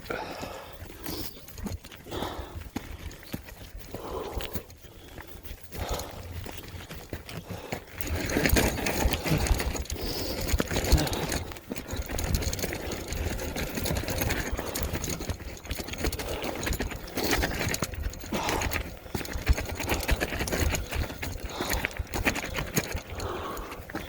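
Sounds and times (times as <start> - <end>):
bike rattling on gravel: 0.0 - 24.0.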